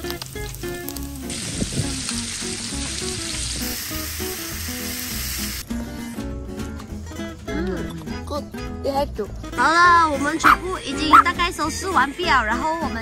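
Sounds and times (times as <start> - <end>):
food sizzling in a hot pan: 0.0 - 5.6.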